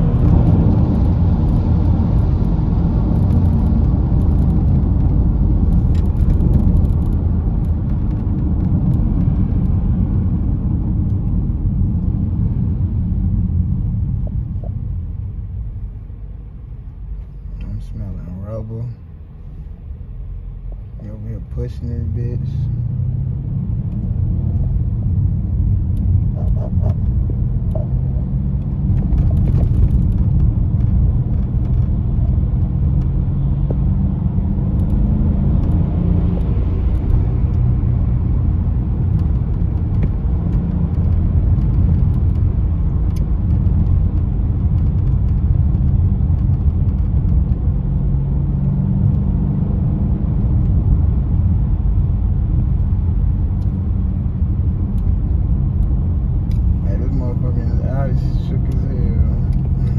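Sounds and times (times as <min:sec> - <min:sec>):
road rumble inside car: 0:00.0 - 0:59.9
car engine revving: 0:22.5 - 0:59.9.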